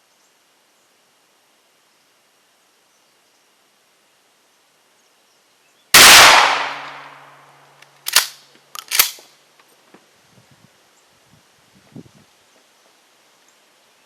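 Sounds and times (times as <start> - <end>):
shotgun blast: 6.0 - 7.4
shotgun pump clacks: 8.0 - 9.2.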